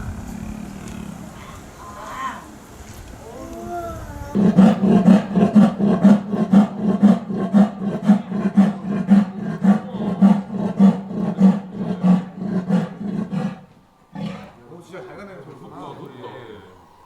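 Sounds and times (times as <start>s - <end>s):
big cat rasping call: 3.6s - 17.0s.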